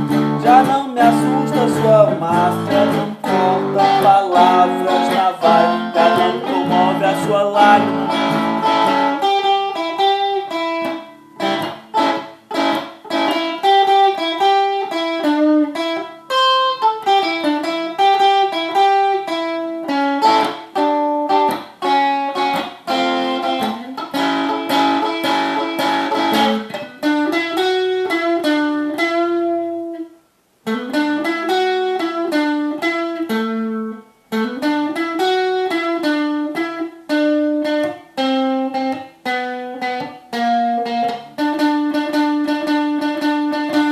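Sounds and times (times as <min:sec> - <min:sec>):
electric guitar playing blues: 0:00.0 - 0:43.9.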